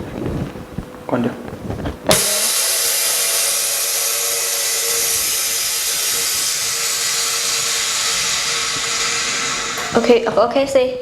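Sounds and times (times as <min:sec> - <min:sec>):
compressed air hissing: 0:02.1 - 0:10.2.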